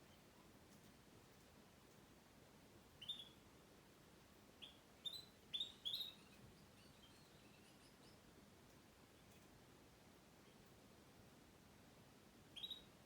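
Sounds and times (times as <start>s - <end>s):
canary chirping: 3.0s - 3.4s, 4.6s - 8.2s, 12.5s - 13.0s.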